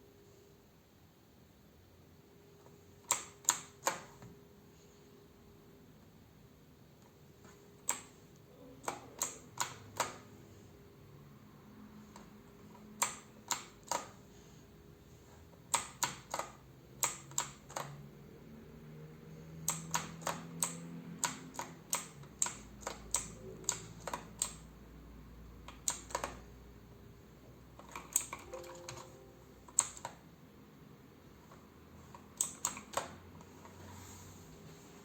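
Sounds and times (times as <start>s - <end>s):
mechanical keyboard typing clicks: 3.1s - 4.3s, 8.8s - 10.3s, 13.0s - 14.2s, 15.7s - 18.0s, 19.6s - 24.7s, 25.6s - 26.4s, 27.8s - 30.2s, 32.4s - 33.2s.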